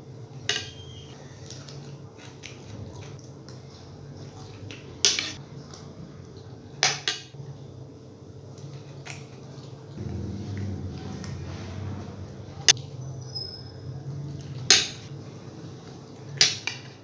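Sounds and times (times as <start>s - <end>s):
cutlery clinking on a plate: 0.5s - 1.8s.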